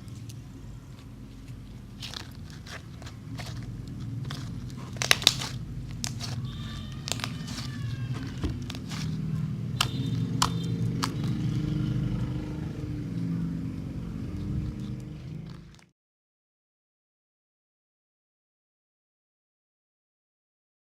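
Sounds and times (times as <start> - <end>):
slime clicking and popping: 5.0 - 6.4, 7.0 - 7.6, 9.8 - 11.3.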